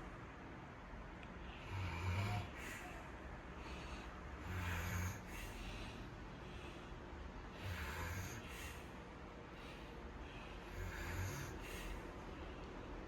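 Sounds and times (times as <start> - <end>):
breathy exhale: 1.4 - 12.7
pet snoring: 1.6 - 2.9, 4.4 - 5.6, 7.5 - 8.9, 10.6 - 12.0.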